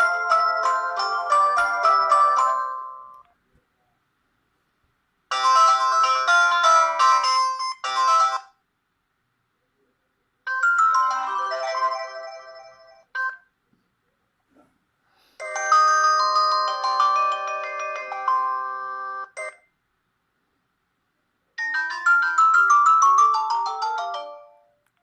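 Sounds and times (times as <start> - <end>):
polyphonic phone ringtone: 0.0 - 3.2, 5.3 - 8.6, 10.5 - 13.4, 15.4 - 19.7, 21.6 - 24.8.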